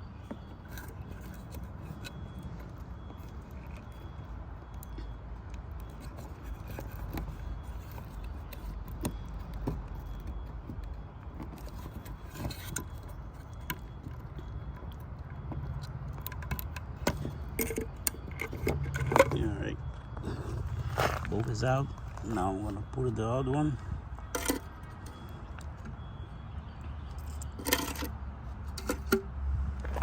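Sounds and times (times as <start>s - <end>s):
metallic clicks and scrapes: 0.2s - 19.5s, 24.2s - 26.0s, 27.1s - 30.0s.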